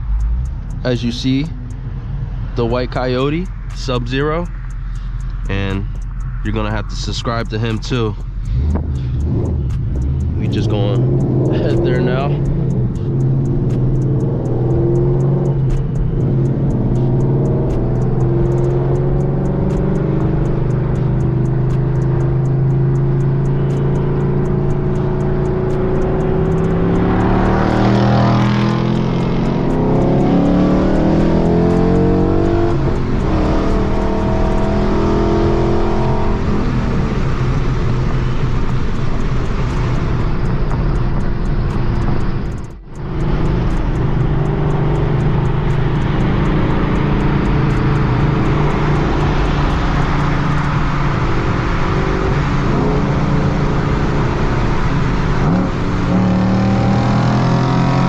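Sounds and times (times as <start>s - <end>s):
car engine exhaust accelerating: 0.0s - 58.0s.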